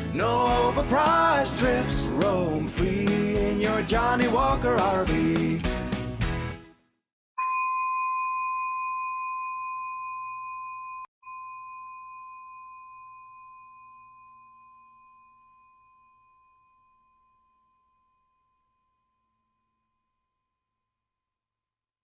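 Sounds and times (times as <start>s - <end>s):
bell-like chime ringing: 7.4s - 19.3s.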